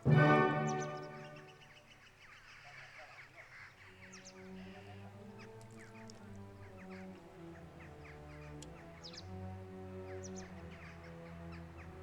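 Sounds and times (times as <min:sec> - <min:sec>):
bird chirps: 0:00.0 - 0:06.1
faint background music: 0:00.0 - 0:12.0.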